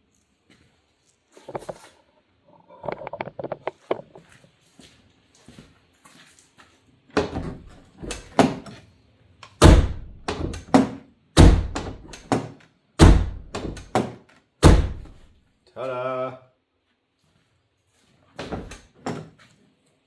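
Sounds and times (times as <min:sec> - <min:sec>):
door handle and latch clicks: 0:07.2 - 0:08.7, 0:09.6 - 0:15.2, 0:18.4 - 0:19.2
truck door slamming: 0:07.2 - 0:08.7, 0:09.6 - 0:15.2.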